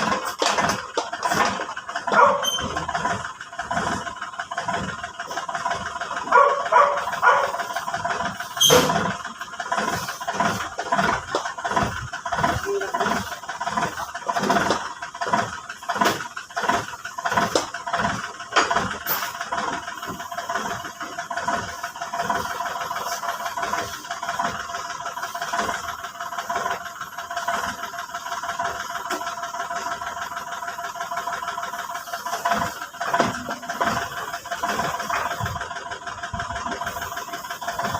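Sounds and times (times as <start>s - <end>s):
metal knocks and clanks: 0.0s - 13.3s, 32.6s - 35.8s
backhoe engine rattling: 0.0s - 37.9s.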